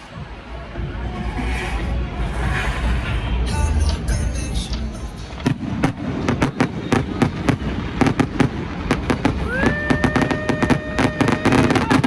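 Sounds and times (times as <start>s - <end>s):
fireworks bangs and crackling pops: 4.8s - 12.0s.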